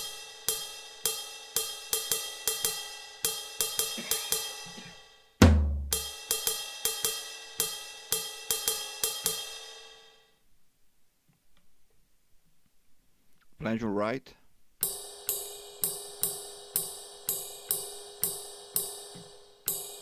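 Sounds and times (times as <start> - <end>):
deep thump: 5.4 - 6.0.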